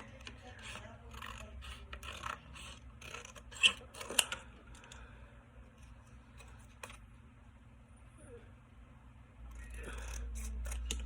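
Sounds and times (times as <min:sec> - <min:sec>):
scissors snipping cardboard: 0:00.0 - 0:04.4.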